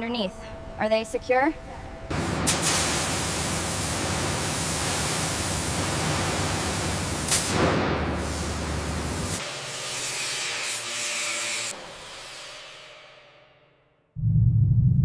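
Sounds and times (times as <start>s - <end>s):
low hum: 14.2s - 15.0s.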